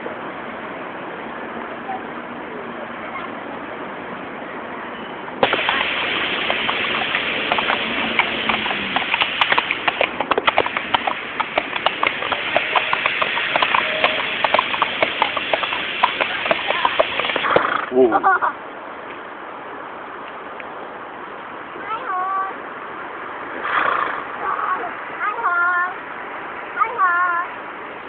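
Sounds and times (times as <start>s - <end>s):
horse hooves clip-clopping: 5.4s - 17.9s
steady hiss: 5.4s - 18.4s.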